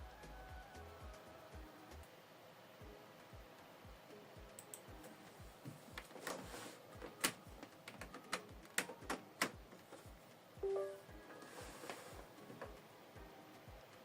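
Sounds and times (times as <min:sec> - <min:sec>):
background music with low beat: 0:00.0 - 0:02.1, 0:02.8 - 0:14.0.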